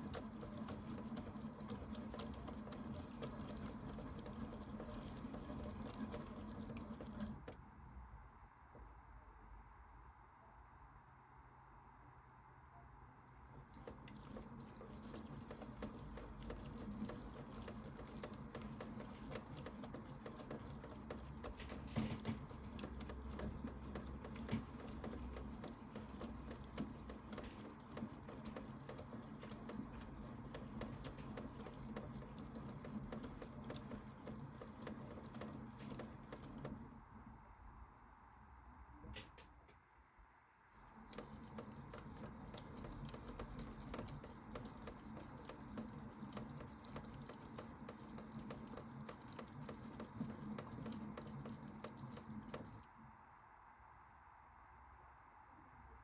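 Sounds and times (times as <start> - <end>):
toy washing machine motor: 0.0 - 7.5, 13.6 - 36.8, 40.8 - 52.9
water sloshing: 13.6 - 37.0, 40.8 - 53.0.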